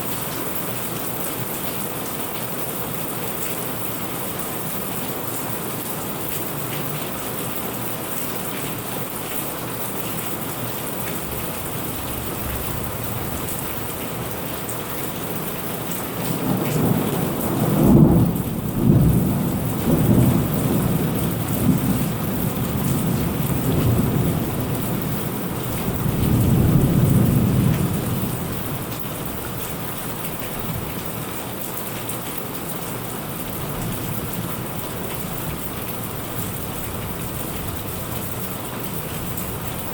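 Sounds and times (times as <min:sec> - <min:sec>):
steady rain: 0:00.0 - 0:39.9
rolling thunder with cracks: 0:16.4 - 0:28.5.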